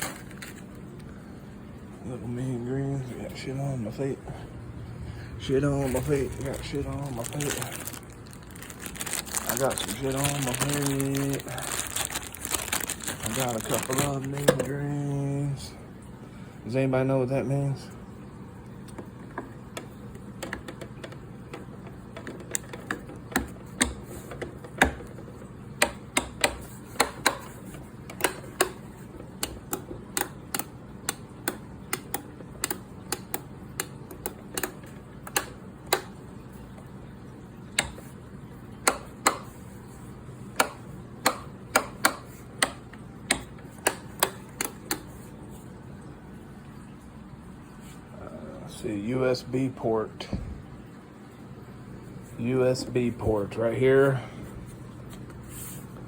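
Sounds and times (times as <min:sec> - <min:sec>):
faint steady hum: 0:00.0 - 0:56.0
small hard parts clicking: 0:05.8 - 0:14.7.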